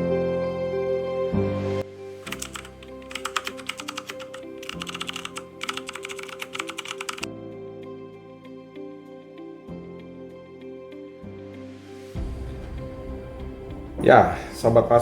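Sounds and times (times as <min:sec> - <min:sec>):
soft background music: 0:00.0 - 0:15.0
computer keyboard typing: 0:02.3 - 0:07.3.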